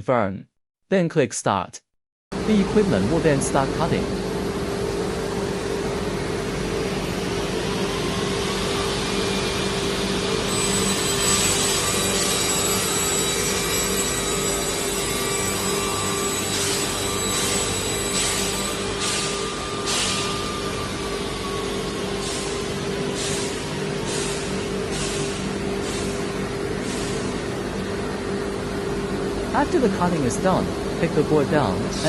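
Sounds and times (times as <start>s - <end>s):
saw motor hum: 6.8s - 26.0s
saw blade whine and hiss: 6.8s - 27.4s.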